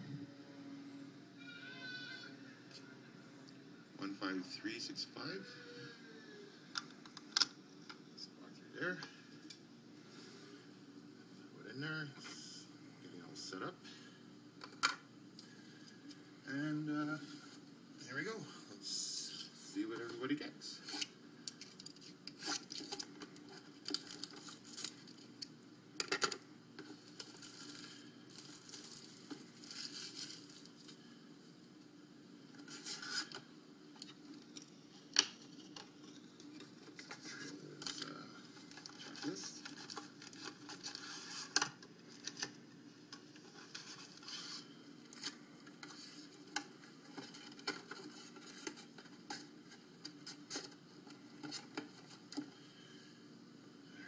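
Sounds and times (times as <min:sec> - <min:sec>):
cards and packaging rustling: 0:20.8 - 0:25.3, 0:26.0 - 0:31.0, 0:32.6 - 0:33.5, 0:35.2 - 0:42.6
plastic wrap and cardboard crinkling: 0:22.4 - 0:25.2, 0:26.9 - 0:31.0.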